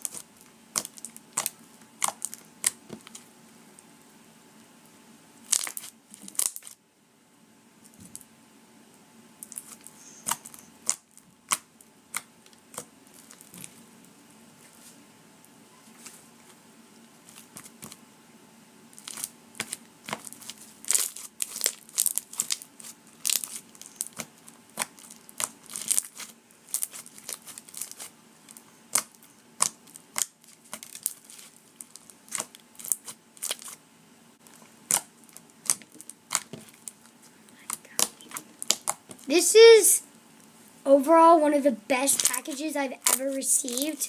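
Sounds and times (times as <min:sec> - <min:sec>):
slime crackling and popping: 0:00.0 - 0:03.2, 0:05.4 - 0:06.8, 0:09.4 - 0:13.8, 0:18.9 - 0:33.8, 0:34.4 - 0:39.3, 0:42.0 - 0:44.0.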